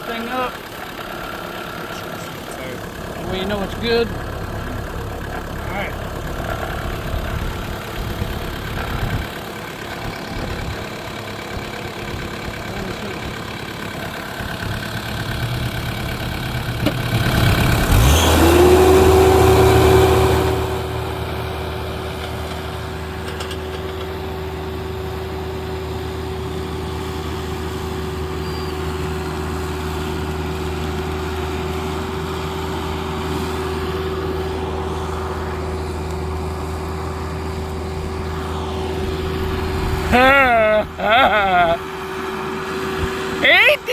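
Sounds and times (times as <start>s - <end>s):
engine running: 0.0s - 43.9s
steady whine: 31.3s - 43.6s.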